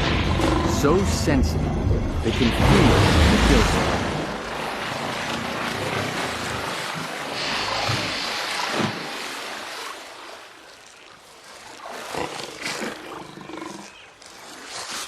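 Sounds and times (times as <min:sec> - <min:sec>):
rush of water noise: 0:02.2 - 0:13.0.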